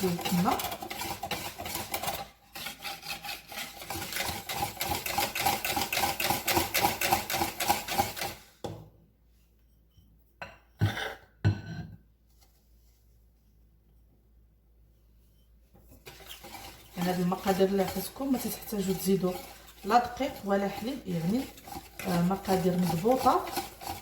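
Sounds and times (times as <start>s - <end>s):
whisk knocking against bowl: 0.0s - 2.7s, 3.6s - 8.8s, 15.9s - 24.0s
whisk beating batter in a bowl: 0.0s - 8.6s, 15.8s - 24.0s.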